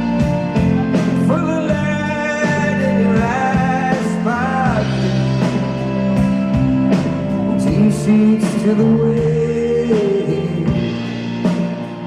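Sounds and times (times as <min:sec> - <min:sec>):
live band music: 0:00.0 - 0:12.0
man singing: 0:00.5 - 0:05.8, 0:07.3 - 0:11.6.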